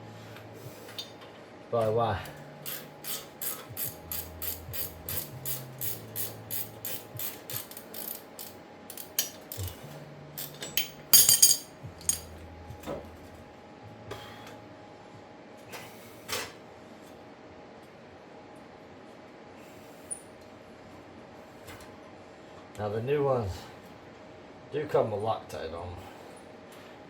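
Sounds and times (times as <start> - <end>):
ratchet wrench clicking: 2.6 - 9.8
metallic clatter: 10.4 - 12.3.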